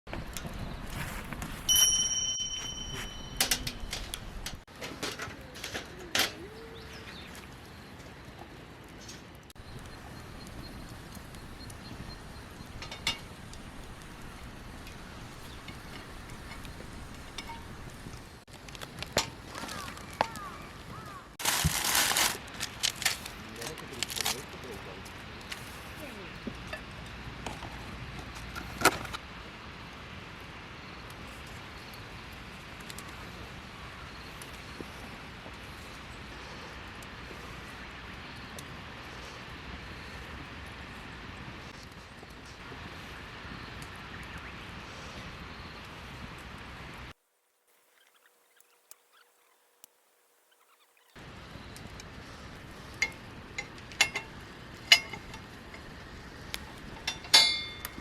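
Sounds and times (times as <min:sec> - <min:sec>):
faint fire crackles: 0:00.1 - 0:58.0
metal cookware clinking: 0:01.7 - 0:04.6, 0:53.0 - 0:55.9, 0:56.9 - 0:58.0
campfire hiss: 0:05.6 - 0:58.0.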